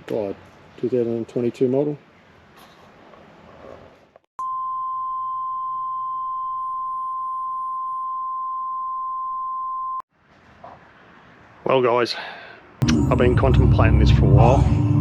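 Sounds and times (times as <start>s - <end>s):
electronic beep tone: 4.4s - 10.0s.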